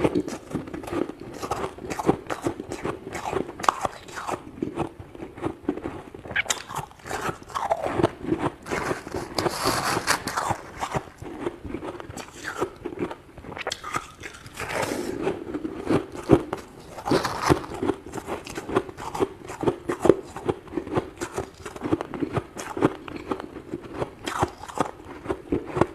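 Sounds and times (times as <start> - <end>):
freezer frost being scraped: 7.1 - 11.5, 14.6 - 19.3.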